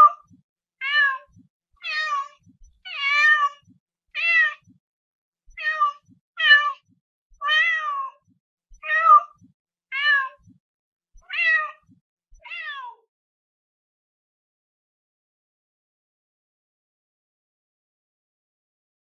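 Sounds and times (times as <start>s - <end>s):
cat meowing: 0.8s - 4.7s, 5.5s - 6.8s, 7.4s - 8.2s, 8.8s - 10.5s, 11.2s - 13.0s.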